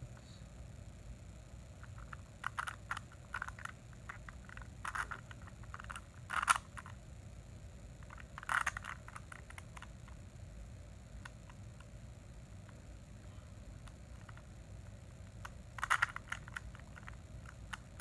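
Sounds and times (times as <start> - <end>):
rubik's cube layers clicking: 1.9 - 6.9, 8.1 - 10.2, 15.4 - 18.0.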